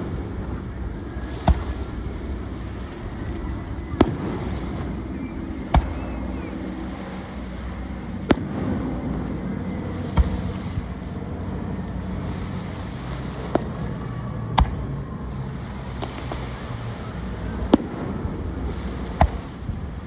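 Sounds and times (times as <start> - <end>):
fireworks bangs: 0.0 - 2.3, 3.0 - 7.4, 8.2 - 9.4, 10.0 - 11.0, 12.2 - 15.0, 15.6 - 19.8
steady low rumble: 0.0 - 20.0.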